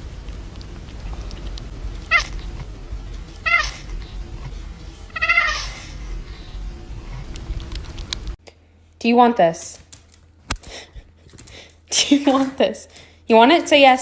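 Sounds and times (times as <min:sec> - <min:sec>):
cat meowing: 0:02.1 - 0:02.5, 0:03.4 - 0:03.9, 0:05.1 - 0:05.8.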